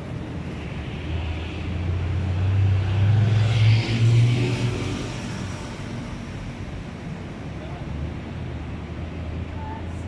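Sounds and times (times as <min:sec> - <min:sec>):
vehicle passing by: 0:01.8 - 0:06.1.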